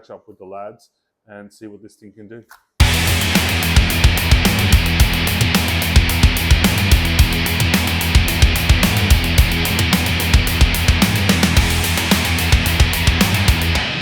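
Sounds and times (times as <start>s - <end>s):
loud rock music: 2.8s - 14.0s.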